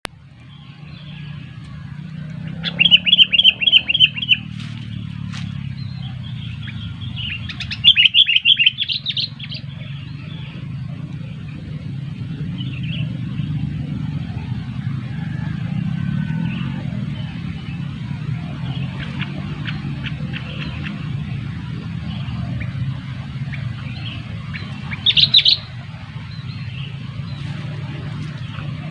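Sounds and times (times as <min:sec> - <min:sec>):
bird chattering calls: 0:02.4 - 0:10.9, 0:16.5 - 0:28.9.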